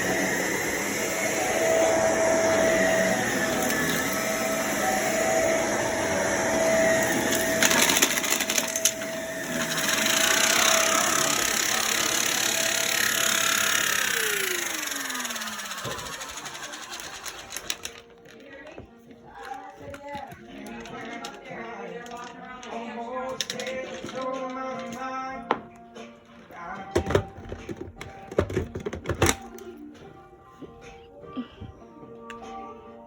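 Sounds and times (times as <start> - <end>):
vacuum cleaner motor whine: 0.0 - 17.9.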